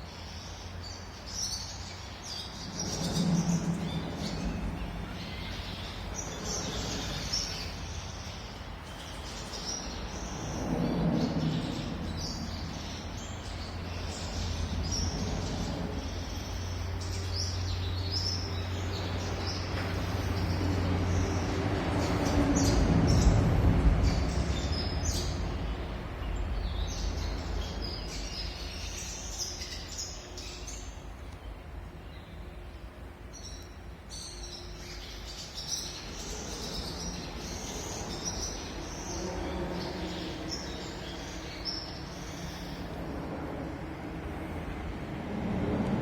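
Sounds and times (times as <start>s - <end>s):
low steady rumble: 2.4s - 29.3s.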